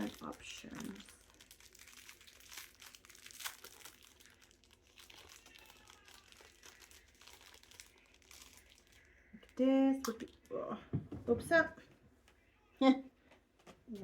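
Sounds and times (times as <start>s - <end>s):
packaging crinkling: 0.0s - 9.6s.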